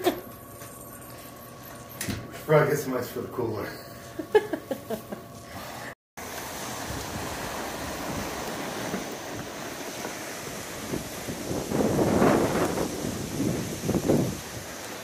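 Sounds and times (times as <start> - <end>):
blizzard wind rushing: 6.7 - 15.0.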